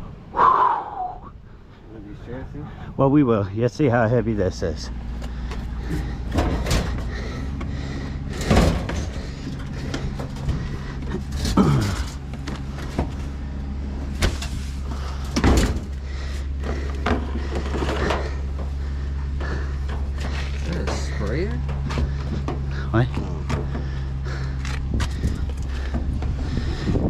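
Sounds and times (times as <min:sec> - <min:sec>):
vehicle engine idling: 0:01.4 - 0:27.0
heavy knocks and clunks: 0:05.2 - 0:13.4, 0:15.2 - 0:27.0.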